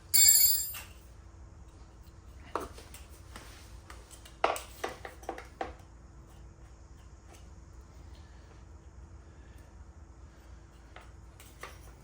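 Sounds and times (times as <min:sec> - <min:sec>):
hand tools clinking on steel: 0:00.0 - 0:00.9.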